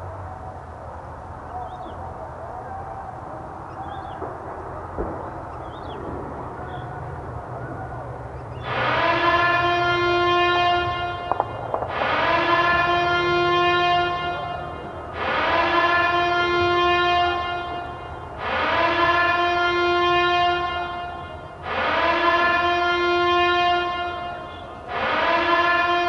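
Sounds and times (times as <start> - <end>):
alarm horn blaring: 8.5 - 26.0.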